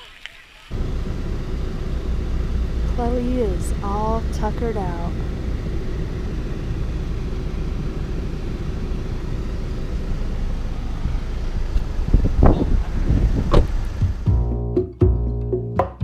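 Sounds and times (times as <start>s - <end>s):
car road noise rumble: 0.7s - 15.4s
knocks and bumps: 12.1s - 14.5s.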